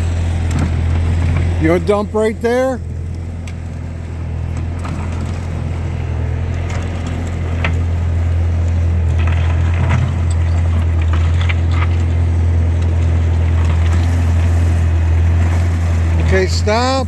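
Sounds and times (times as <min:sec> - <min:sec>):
skid steer engine running: 0:00.0 - 0:17.0
stone crunching and scraping: 0:09.0 - 0:12.3.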